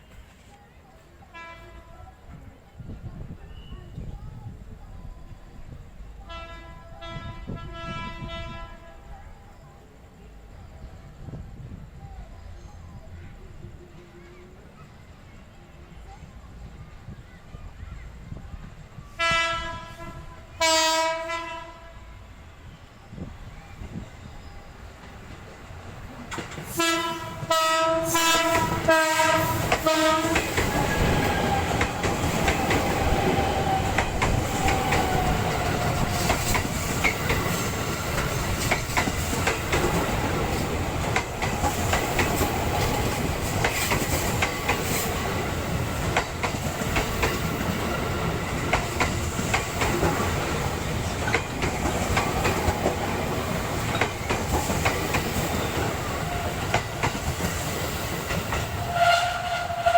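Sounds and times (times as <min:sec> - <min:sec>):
train horn blasts: 0:01.3 - 0:02.0, 0:06.2 - 0:09.1, 0:19.1 - 0:22.3, 0:26.7 - 0:31.9, 0:58.7 - 0:59.9
train wheels clacking on rails: 0:25.0 - 0:59.9.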